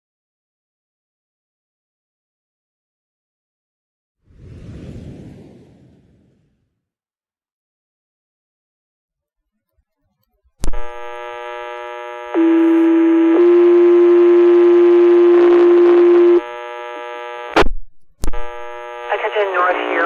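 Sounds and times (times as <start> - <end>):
radio channel hum: 10.6 - 20.0
radio squelch burst: 17.2 - 20.0.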